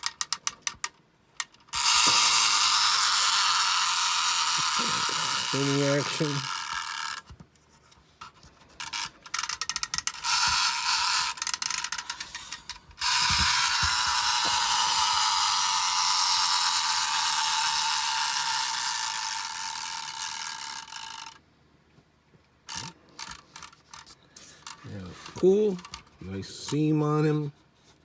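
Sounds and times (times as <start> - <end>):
clockwork mechanism clicking: 0.0 - 7.3, 8.8 - 21.4
clockwork mechanism whirring: 1.5 - 7.3, 8.8 - 21.4.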